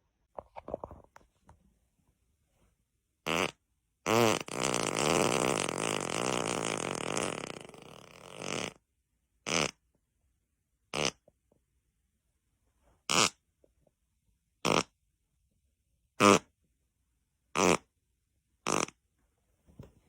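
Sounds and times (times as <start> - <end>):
farts: 3.2 - 8.8, 9.5 - 9.8, 10.9 - 11.2, 13.1 - 13.4, 14.6 - 14.9, 16.2 - 16.5, 17.6 - 17.9, 18.6 - 19.0.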